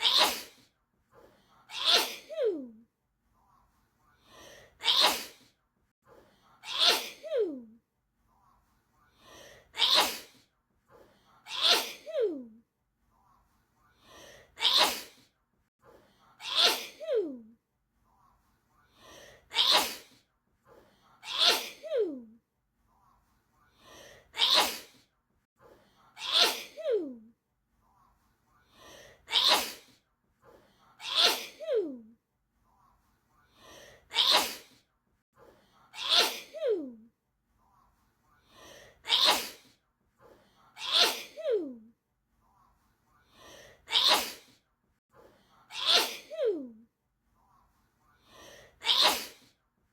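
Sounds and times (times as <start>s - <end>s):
person sneezing: 0.0s - 0.7s, 1.7s - 2.7s, 4.8s - 5.5s, 6.6s - 7.6s, 9.8s - 10.4s, 11.5s - 12.4s, 14.6s - 15.3s, 16.4s - 17.4s, 19.5s - 20.2s, 21.2s - 22.2s, 24.4s - 25.0s, 26.2s - 27.1s, 29.3s - 30.0s, 31.0s - 32.0s, 34.1s - 34.8s, 36.0s - 36.9s, 39.1s - 39.8s, 40.8s - 41.8s, 43.9s - 44.6s, 45.7s - 46.6s, 48.8s - 49.6s.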